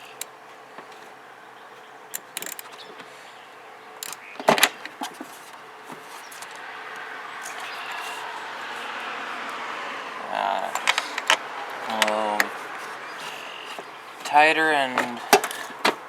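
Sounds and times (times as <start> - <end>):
metal tools clanking on battery nuts: 2.1 - 2.9, 4.0 - 6.6, 10.6 - 16.0.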